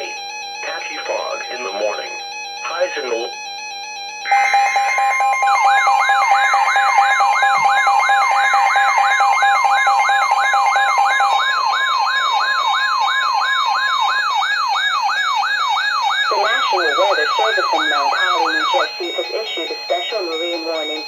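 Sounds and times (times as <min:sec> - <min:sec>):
steady alarm tones: 0:00.0 - 0:21.0
rising siren sweep: 0:04.3 - 0:19.4.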